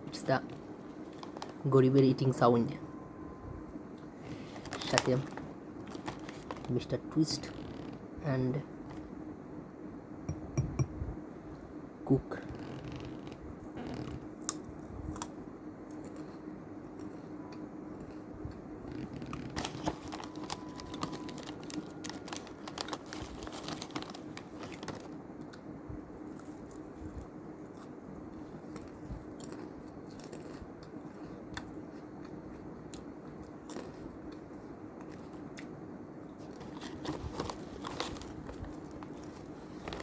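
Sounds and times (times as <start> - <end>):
faint steady hum: 0.0 - 40.0
snack packet crinkling: 1.0 - 1.6, 4.4 - 6.8, 18.9 - 25.2, 36.4 - 40.0
crisp snack crunching: 4.5 - 6.8, 19.2 - 25.2, 28.7 - 31.2, 33.0 - 34.4, 36.4 - 40.0.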